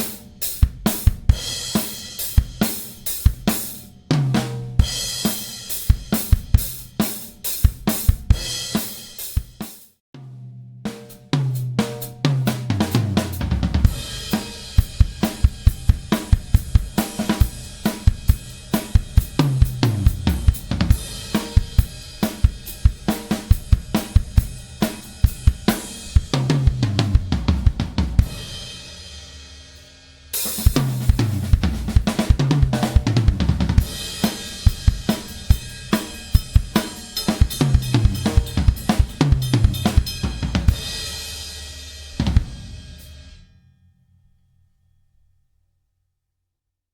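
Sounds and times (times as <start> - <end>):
snare drum: 11.0 - 28.5, 30.4 - 41.2
bass drum: 11.3 - 28.7, 30.6 - 41.3, 42.1 - 43.1
cymbals: 12.8 - 27.3, 28.1 - 43.5.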